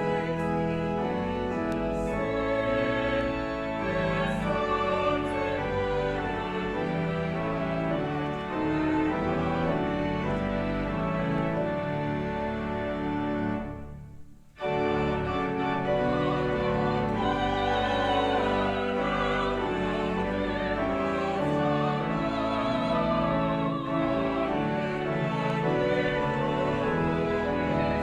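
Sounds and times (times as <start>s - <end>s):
organ: 0.0s - 28.0s
people singing: 2.0s - 6.8s, 15.8s - 28.0s.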